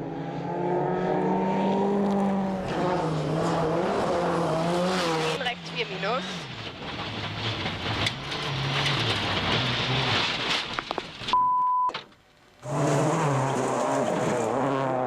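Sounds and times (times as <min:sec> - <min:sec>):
rally car engine revving: 0:00.0 - 0:11.3, 0:12.6 - 0:15.0
rally car engine under load: 0:00.0 - 0:15.0
tyre and road noise: 0:00.5 - 0:11.4, 0:12.0 - 0:15.0
short steady beep: 0:11.3 - 0:12.0.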